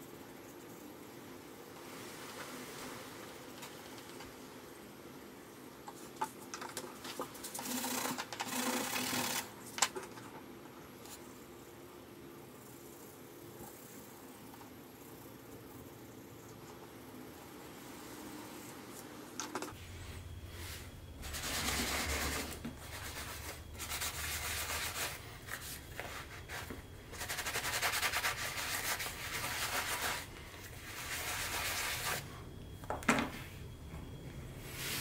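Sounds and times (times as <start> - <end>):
sandpaper rubbing on leather: 21.3 - 32.2.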